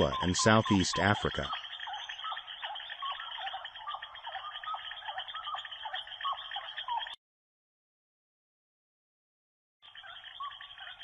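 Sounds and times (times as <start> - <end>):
chorus of chirping calls: 0.0 - 7.2, 9.8 - 11.0.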